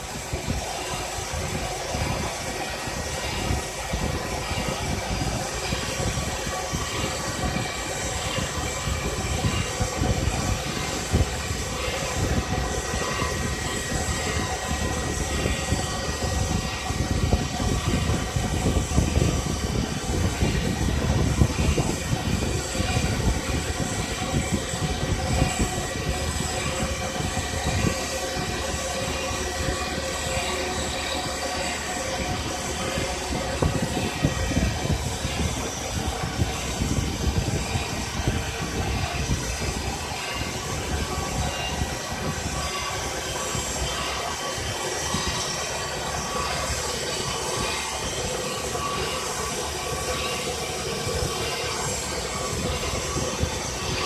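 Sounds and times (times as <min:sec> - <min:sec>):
faint steady tones: 0:00.0 - 0:54.0
hiss: 0:00.0 - 0:54.0
milling machine cutting: 0:00.0 - 0:54.0.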